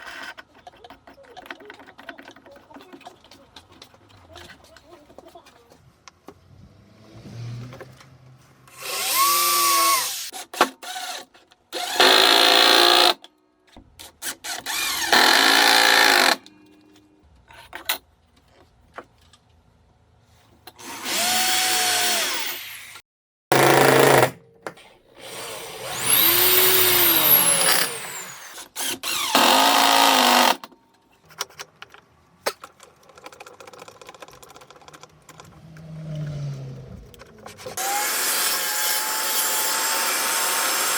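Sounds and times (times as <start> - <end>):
power tool motor whine: 8.7 - 10.3, 25.2 - 30.6, 37.7 - 40.9.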